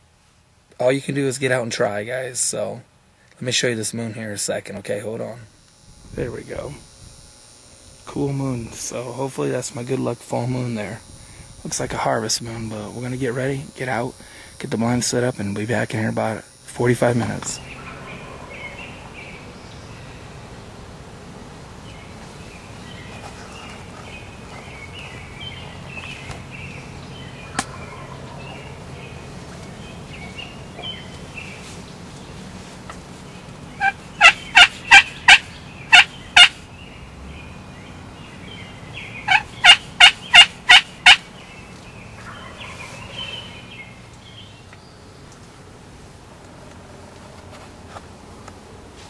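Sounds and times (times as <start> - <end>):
small birds chirping: 4.8 - 20.7, 21.7 - 45.6
turkey calls: 17.4 - 20.4, 21.8 - 31.8, 33.7 - 36.7, 39.0 - 44.8.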